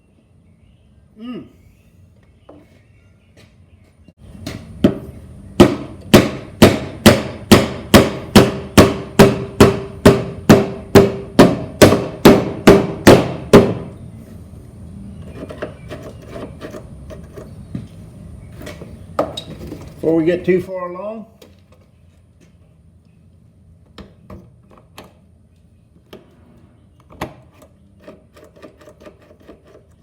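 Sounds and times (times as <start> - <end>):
hammer striking metal: 5.6 - 13.9.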